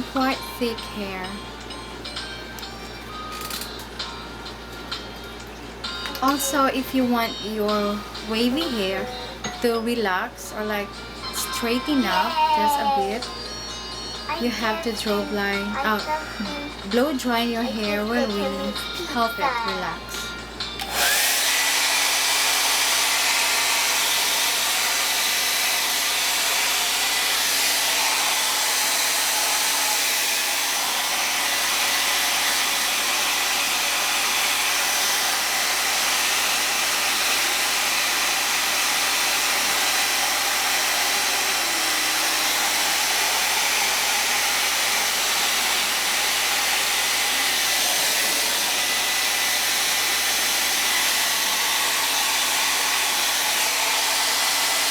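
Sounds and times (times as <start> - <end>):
hair dryer running: 0.0 - 54.9.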